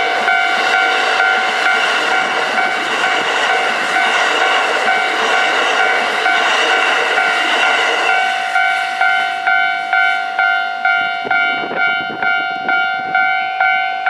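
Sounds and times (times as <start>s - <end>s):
passing train: 0.0s - 14.0s
level crossing bell ringing: 8.1s - 14.0s.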